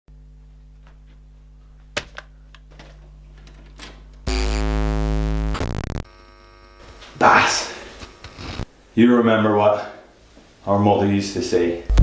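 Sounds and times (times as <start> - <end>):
low electrical hum: 0.1 - 12.0
loud harsh electric buzz: 2.7 - 8.7.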